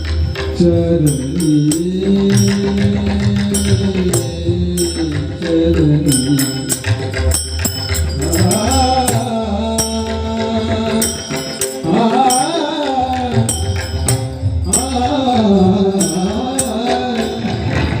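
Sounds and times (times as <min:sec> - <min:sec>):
sharp percussion strikes: 0:00.0 - 0:18.0
sustained instrumental tones: 0:00.0 - 0:18.0
person singing devotional song: 0:08.1 - 0:18.0.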